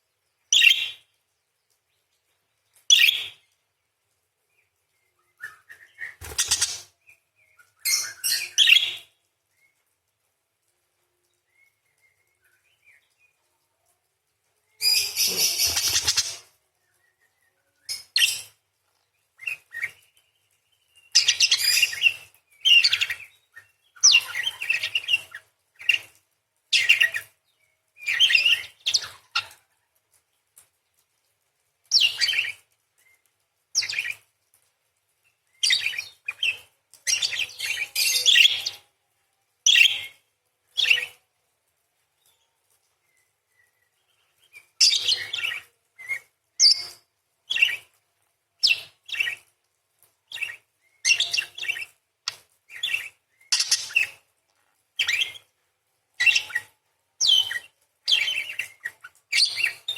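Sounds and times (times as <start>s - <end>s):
parakeet chattering calls: 6.3s - 6.8s, 14.9s - 16.5s, 53.5s - 54.1s.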